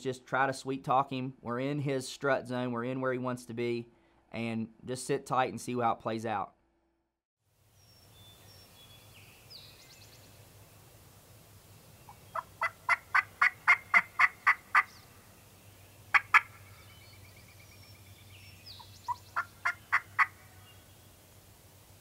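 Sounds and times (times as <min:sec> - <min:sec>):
faint songbird notes: 0:07.7 - 0:12.7, 0:14.1 - 0:21.5
turkey yelping: 0:12.1 - 0:15.0, 0:16.1 - 0:16.9, 0:18.8 - 0:20.6.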